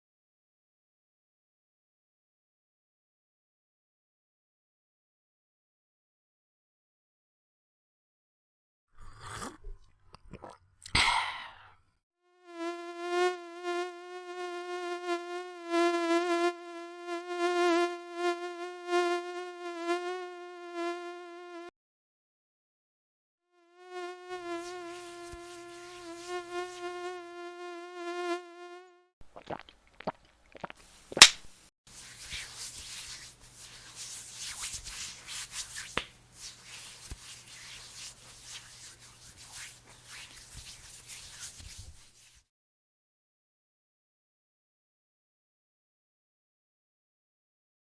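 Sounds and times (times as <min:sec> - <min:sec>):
mosquito buzzing: 0:12.3 - 0:21.7, 0:23.5 - 0:29.2.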